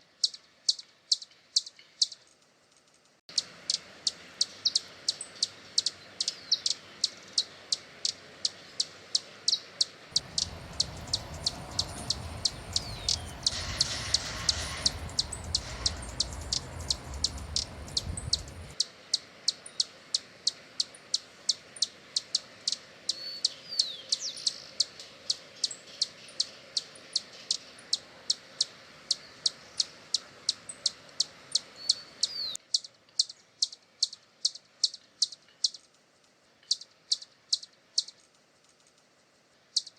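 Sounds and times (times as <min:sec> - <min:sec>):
hummingbird chip calls: 0:10.2 - 0:18.8
low rumble: 0:10.2 - 0:18.8.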